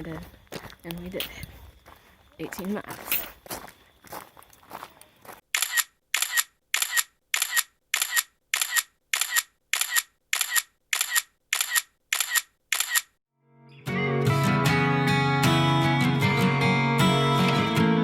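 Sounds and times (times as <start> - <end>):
camera shutter clicking: 5.6 - 13.2.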